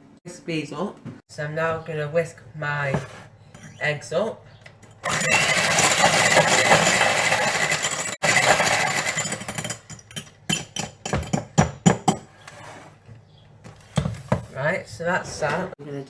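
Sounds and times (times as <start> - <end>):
electric whisk beating eggs: 5.0 - 10.2.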